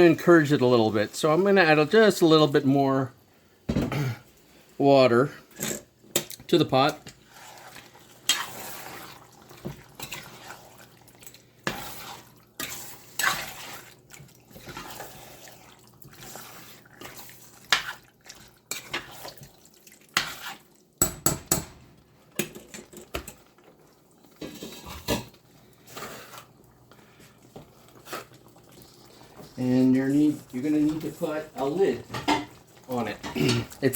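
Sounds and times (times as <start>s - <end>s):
spoon scraping a pot: 5.6s - 19.5s, 20.1s - 21.6s
liquid sloshing: 7.0s - 20.8s.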